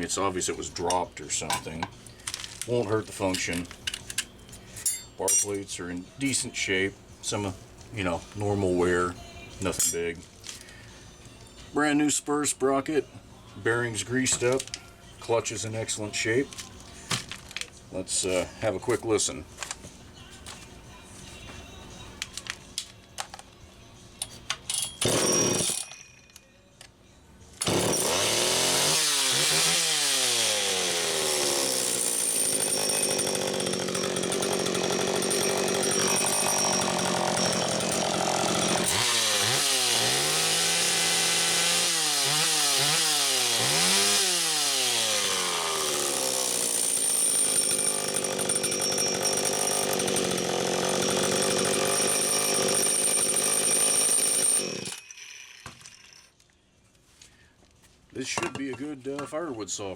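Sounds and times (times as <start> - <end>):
chainsaw starting and revving: 25.0 - 25.8, 27.6 - 56.2.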